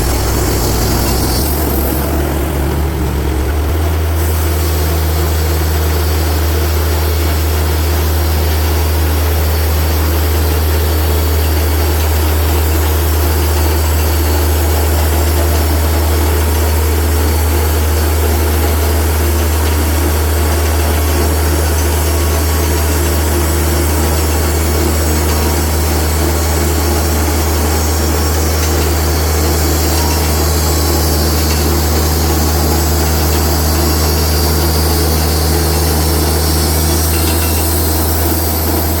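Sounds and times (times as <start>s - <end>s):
sawmill engine running: 0.0s - 39.0s.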